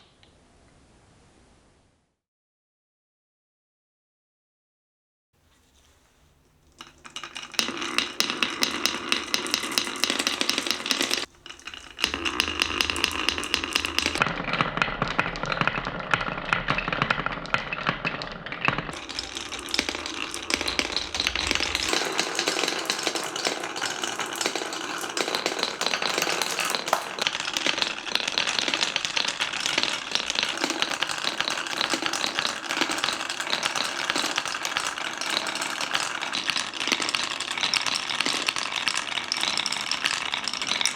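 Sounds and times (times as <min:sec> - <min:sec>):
glass marbles rolling on wood: 0:05.5 - 0:40.9.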